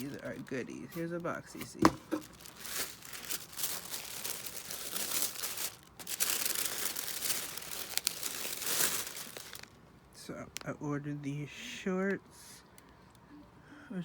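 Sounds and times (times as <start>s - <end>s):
packaging crinkling and rustling: 0.0s - 9.8s.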